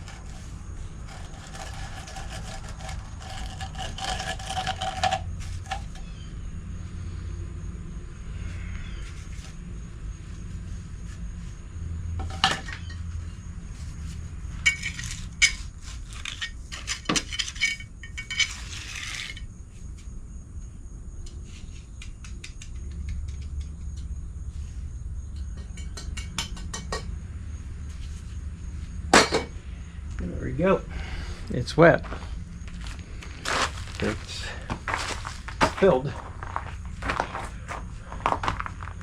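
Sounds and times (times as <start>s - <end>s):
hand tools clinking and scraping: 0.0s - 6.1s, 14.6s - 19.5s, 32.0s - 39.0s.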